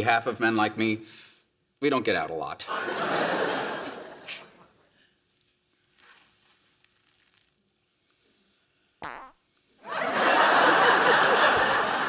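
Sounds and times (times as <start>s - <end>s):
audience laughing: 2.7s - 4.6s, 9.8s - 12.0s
fart: 9.0s - 9.4s.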